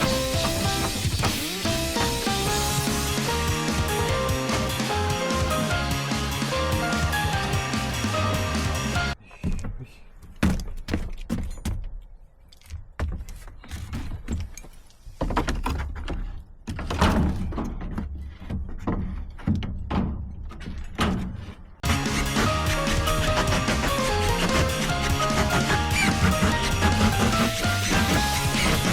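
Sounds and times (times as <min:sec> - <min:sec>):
knocks and thuds: 0:00.0 - 0:06.0, 0:09.4 - 0:12.0, 0:15.2 - 0:28.9.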